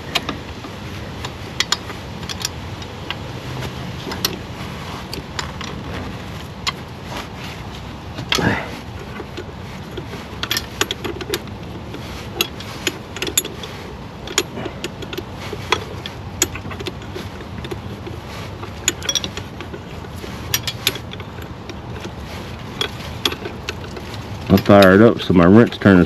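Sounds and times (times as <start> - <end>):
light metal clinks: 8.2 - 26.0.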